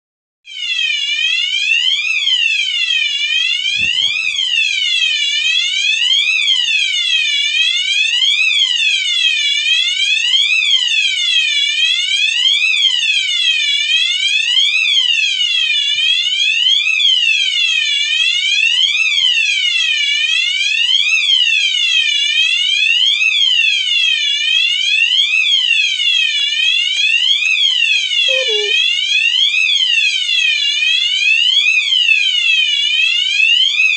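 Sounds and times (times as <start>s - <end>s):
alarm clock siren-like tone: 0.5s - 23.6s, 24.3s - 33.9s
thump: 3.8s - 4.5s.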